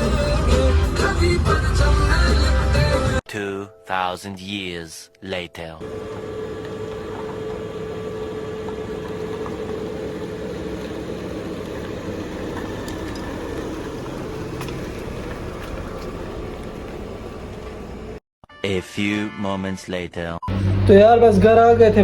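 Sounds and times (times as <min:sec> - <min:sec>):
road traffic noise: 0:00.0 - 0:03.2, 0:05.8 - 0:18.2
steady hum: 0:05.8 - 0:18.2.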